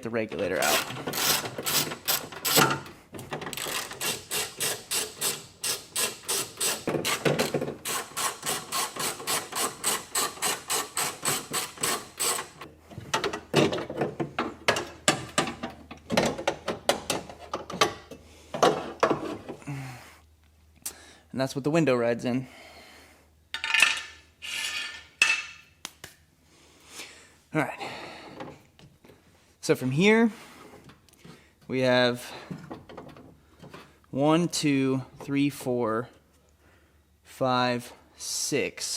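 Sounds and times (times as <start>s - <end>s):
ratchet wrench clicking: 3.6s - 7.2s.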